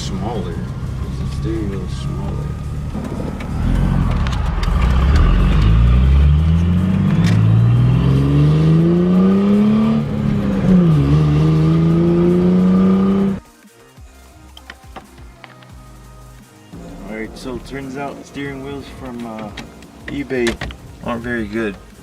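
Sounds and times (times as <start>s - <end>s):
car engine accelerating: 0.0s - 13.4s.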